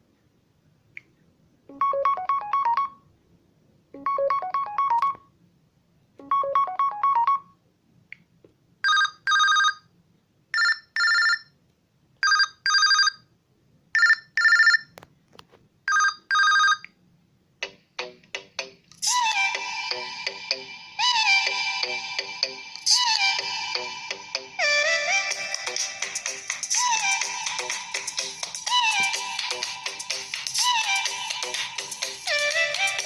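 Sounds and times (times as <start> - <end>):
rising melodic ringtone: 1.7 - 3.0, 4.0 - 5.2, 6.2 - 7.5.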